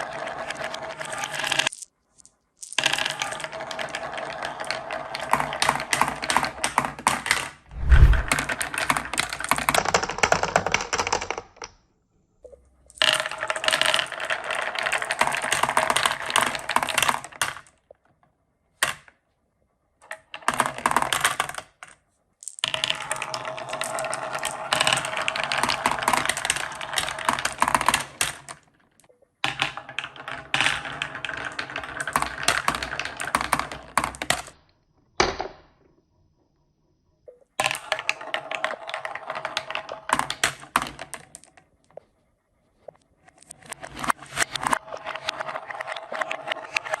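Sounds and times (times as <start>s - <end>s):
marbles clattering down wooden track: 0.0s - 1.8s, 2.6s - 7.6s, 8.4s - 11.7s, 12.9s - 17.8s, 20.1s - 34.6s, 37.6s - 41.6s, 43.4s - 47.0s.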